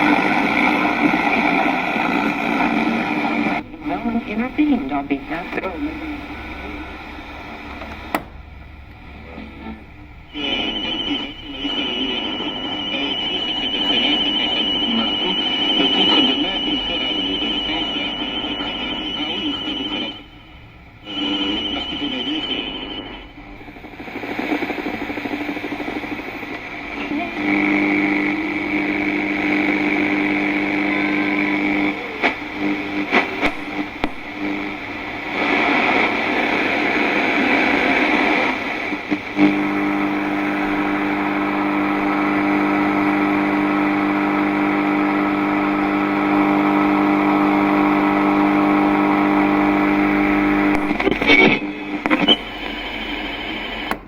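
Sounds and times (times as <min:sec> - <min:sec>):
radio buzzing whine: 0:00.0 - 0:54.0
radio crackles: 0:00.0 - 0:54.0
radio static hiss: 0:00.0 - 0:54.0
radio steady tone: 0:00.0 - 0:54.0.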